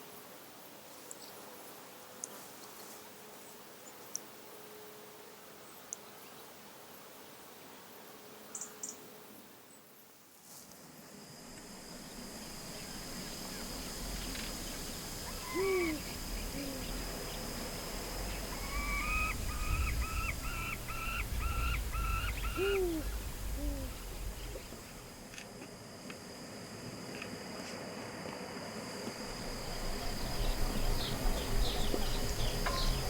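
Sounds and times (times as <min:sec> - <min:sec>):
insect drone: 0:00.0 - 0:33.0
low wind rumble: 0:11.4 - 0:33.0
bird repeating rising note: 0:12.2 - 0:25.0
bird hooting: 0:12.8 - 0:24.8.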